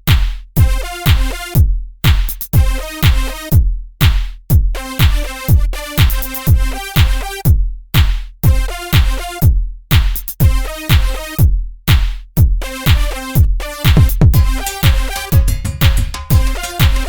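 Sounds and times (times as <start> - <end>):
drum machine kick: 0.0 - 17.0
bright synth chords: 12.7 - 17.0.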